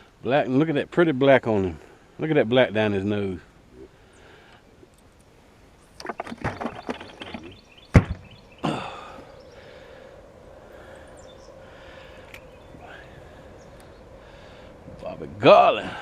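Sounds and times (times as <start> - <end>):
steady hum: 7.2 - 16.0
hard thunk: 7.9 - 8.3.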